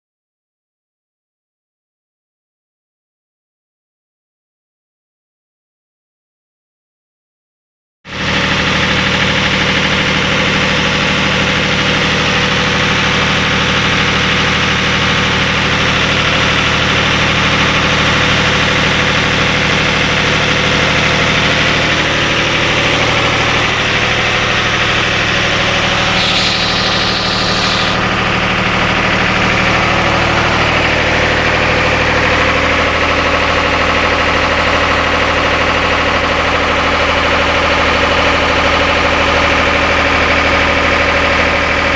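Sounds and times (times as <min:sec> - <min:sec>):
boat diesel engine droning: 0:15.4 - 0:28.2
short hiss: 0:26.2 - 0:28.0.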